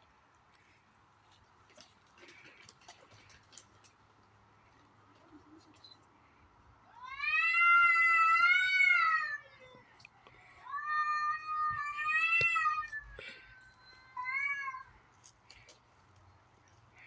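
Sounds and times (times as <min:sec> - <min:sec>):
cat yowling: 0:07.0 - 0:09.6.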